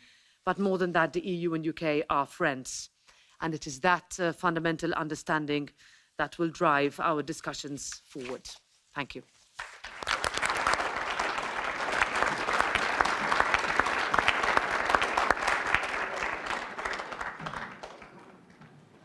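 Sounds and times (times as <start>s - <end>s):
audience applauding: 9.6s - 19.0s.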